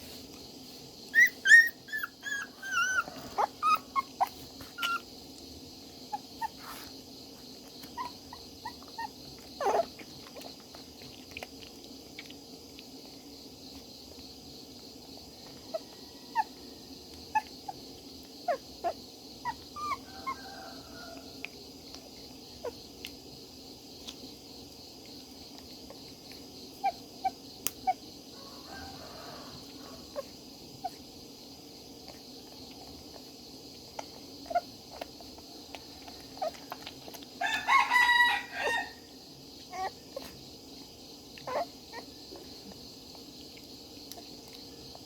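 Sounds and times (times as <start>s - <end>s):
puppies whimpering and squeaking: 1.1s - 5.1s, 7.8s - 9.9s, 18.5s - 20.4s, 39.7s - 40.4s, 41.4s - 42.1s.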